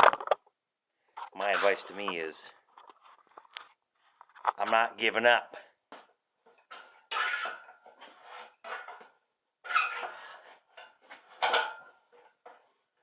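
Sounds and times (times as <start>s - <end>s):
metal clanking and scraping: 6.6s - 9.1s, 9.7s - 12.3s.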